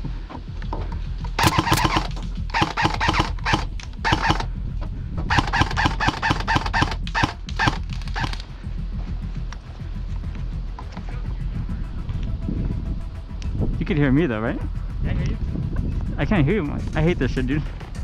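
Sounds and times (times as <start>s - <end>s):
airsoft gun rapid shots: 1.4s - 4.5s, 5.3s - 8.4s.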